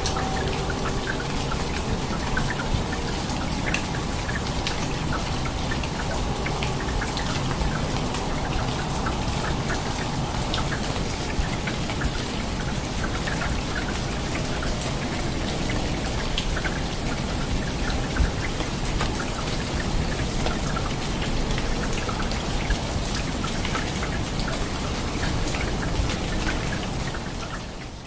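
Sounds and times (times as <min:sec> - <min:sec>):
rain hiss: 0:00.0 - 0:28.0
raindrops striking a surface: 0:00.0 - 0:28.0.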